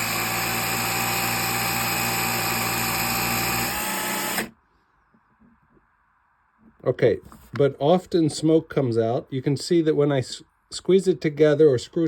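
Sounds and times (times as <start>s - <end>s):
drill motor whining: 0.0s - 4.5s.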